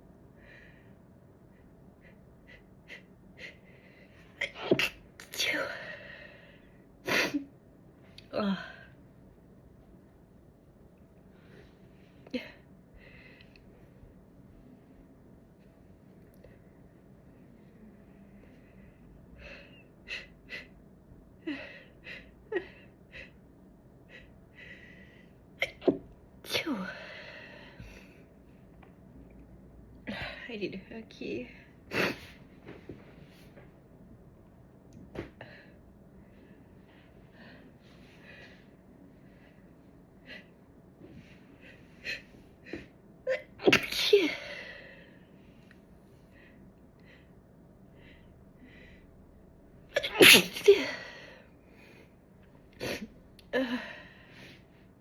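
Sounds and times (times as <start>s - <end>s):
woman sneezing: 43.3s - 44.4s, 50.0s - 51.1s.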